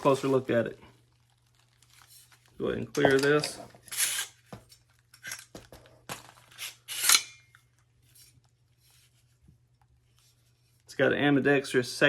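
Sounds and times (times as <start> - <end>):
faint handling noise: 0.0 - 6.6
rifle metallic scrapes and clicks: 3.0 - 4.4, 6.5 - 7.4.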